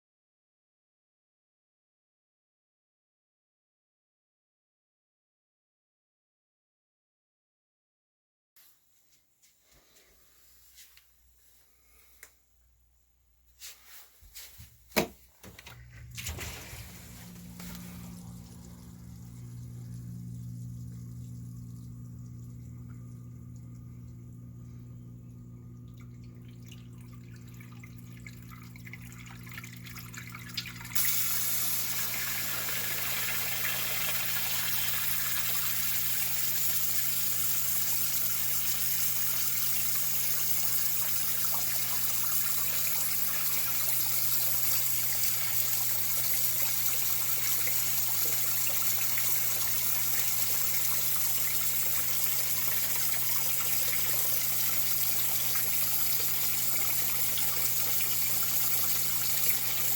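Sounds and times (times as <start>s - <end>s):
water gushing in a sump pit: 15.4s - 59.9s
low hum: 15.6s - 28.9s.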